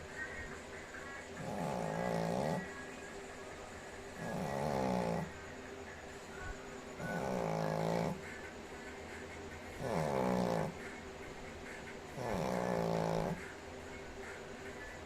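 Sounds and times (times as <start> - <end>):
dog snoring: 1.3 - 2.9, 4.1 - 5.5, 6.9 - 8.5, 9.7 - 11.0, 11.7 - 13.6.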